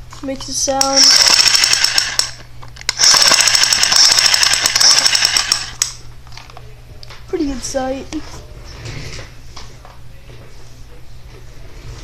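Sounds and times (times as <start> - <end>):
toy rifle rapid-fire rattling: 0.8 - 5.9.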